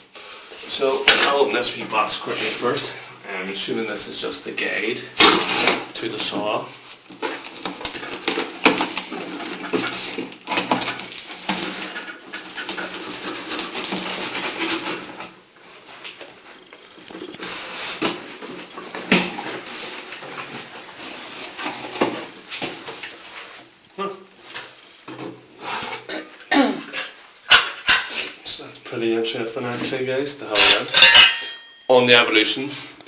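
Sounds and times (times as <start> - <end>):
packaging crackling and rustling: 5.2 - 23.4.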